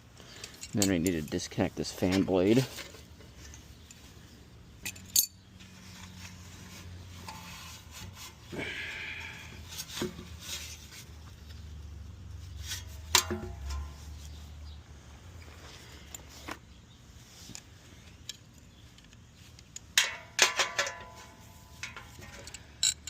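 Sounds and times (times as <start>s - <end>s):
low steady hum: 0.0s - 23.0s
hand tools clinking on metal: 0.3s - 4.0s, 4.8s - 5.4s, 19.6s - 23.0s.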